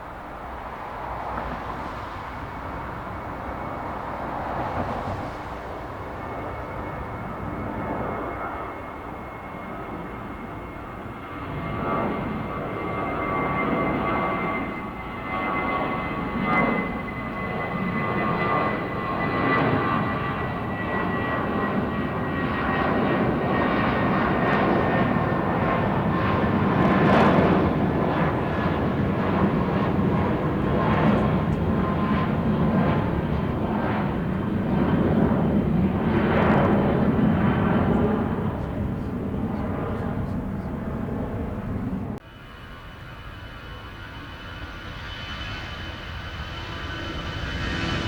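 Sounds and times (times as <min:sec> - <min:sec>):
jet engine roar: 0:00.0 - 0:48.0.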